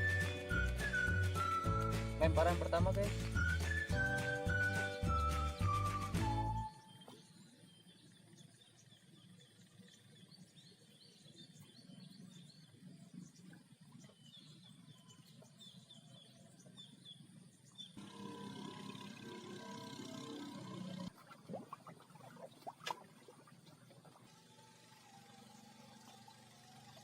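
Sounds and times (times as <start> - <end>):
small birds chirping: 0.0 - 18.1.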